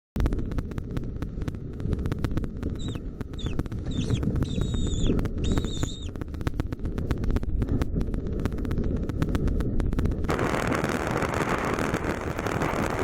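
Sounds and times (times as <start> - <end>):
rapid irregular clicking: 0.2 - 10.4
steady low rumble: 0.2 - 13.0
bird calling: 2.8 - 6.2.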